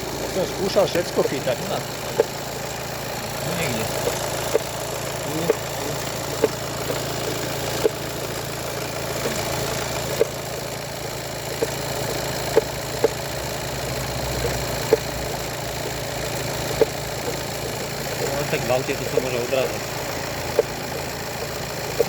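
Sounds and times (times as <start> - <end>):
diesel engine idling: 0.0 - 22.0
sharp engine knocks: 0.0 - 22.0.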